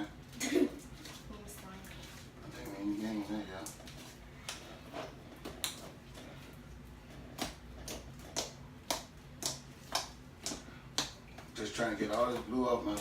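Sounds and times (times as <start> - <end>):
slime wet clicking pops: 7.4 - 11.5.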